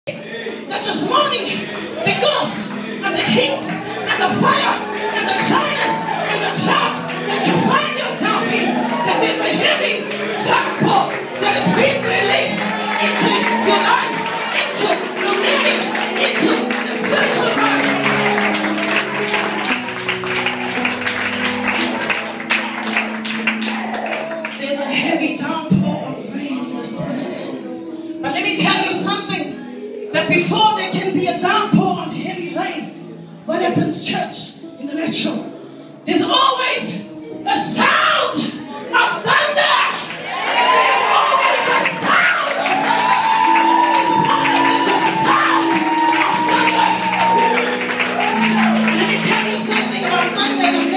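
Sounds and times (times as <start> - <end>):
congregation shouting and cheering: 0.1 - 24.8, 37.7 - 50.9
church music with held chords: 0.1 - 50.9.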